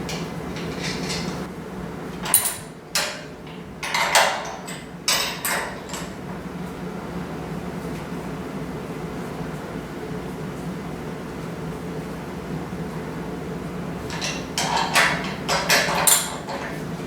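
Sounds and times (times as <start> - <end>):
steady background hum: 0.0 - 17.0
metal parts clanking and scraping: 0.1 - 1.5, 14.1 - 16.8.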